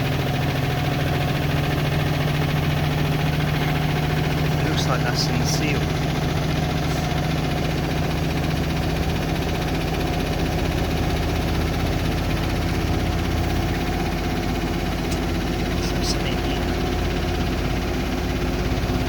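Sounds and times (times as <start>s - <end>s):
washing machine spinning: 0.0s - 19.0s.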